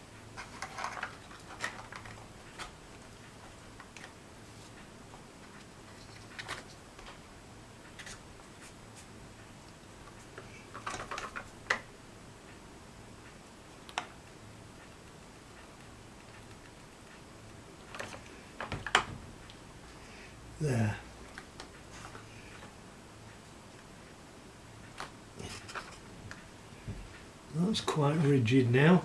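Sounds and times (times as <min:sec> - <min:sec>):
faint steady hum: 0:00.0 - 0:29.0
card parts clicking and rustling: 0:00.4 - 0:02.7.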